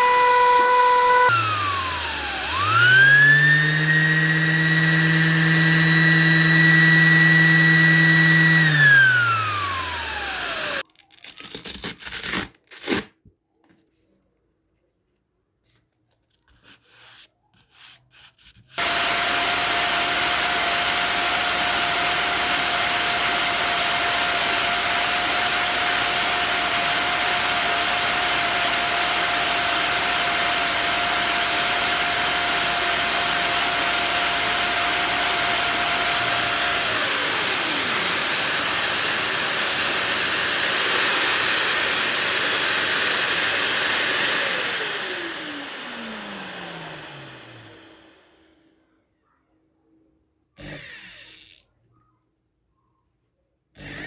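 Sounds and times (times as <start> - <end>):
orbit sander whining: 0.0 - 10.8, 18.8 - 48.5.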